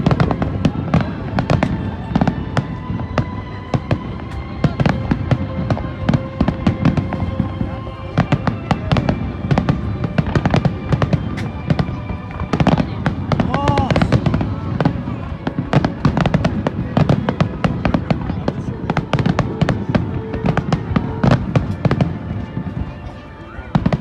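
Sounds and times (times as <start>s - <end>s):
fireworks bangs and crackles: 0.0s - 24.0s.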